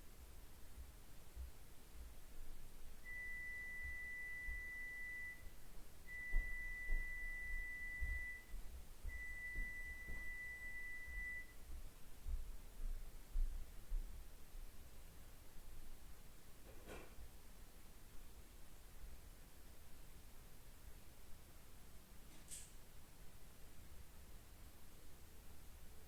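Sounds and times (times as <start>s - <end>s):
long electronic beeps: 3.0s - 5.5s, 6.1s - 11.6s.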